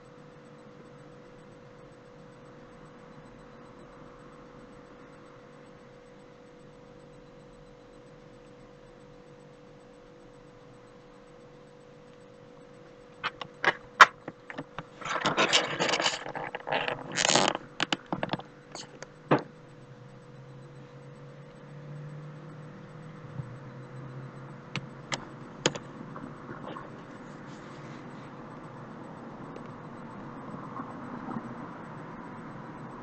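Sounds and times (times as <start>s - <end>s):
faint steady hum: 0.0s - 33.0s
sharp clicks and knocks: 13.2s - 19.6s, 24.7s - 27.1s
scraping and rustling: 14.8s - 18.0s.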